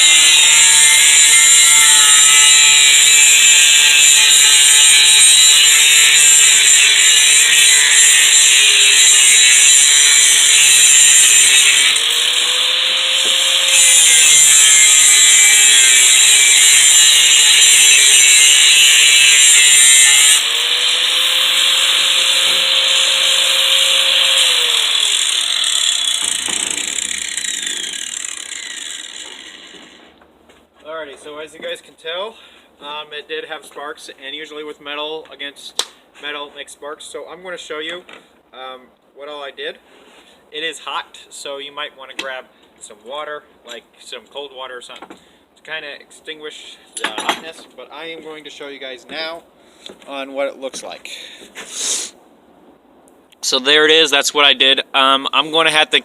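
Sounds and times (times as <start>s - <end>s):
angle grinder grinding metal: 0.0s - 30.2s
grinder winding down: 18.5s - 30.1s.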